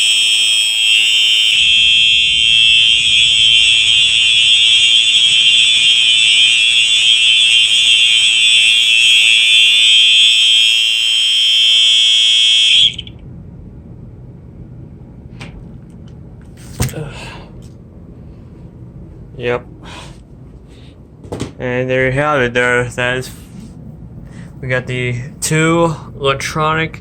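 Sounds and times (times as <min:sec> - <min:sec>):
fire alarm horn buzzing: 0:00.0 - 0:13.2.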